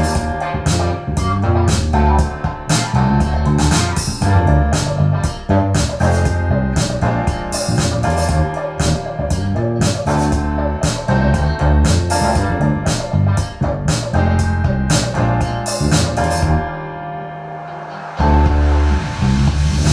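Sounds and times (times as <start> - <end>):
music with drums bass and keyboards: 0.0 - 17.1, 18.1 - 19.9.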